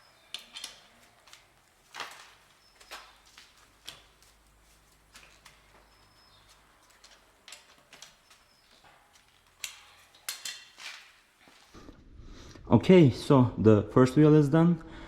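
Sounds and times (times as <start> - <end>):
metallic clicks of tools: 9.6 - 10.8.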